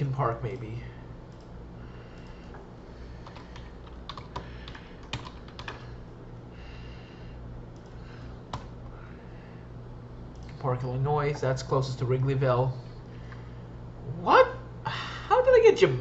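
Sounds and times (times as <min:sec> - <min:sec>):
low steady hum: 0:00.0 - 0:16.0
typing on computer keyboard: 0:03.2 - 0:05.9.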